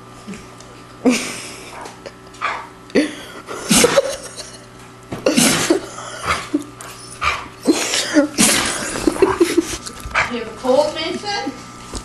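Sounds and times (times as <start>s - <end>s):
small dog sneezing: 5.3s - 6.5s, 7.6s - 8.8s.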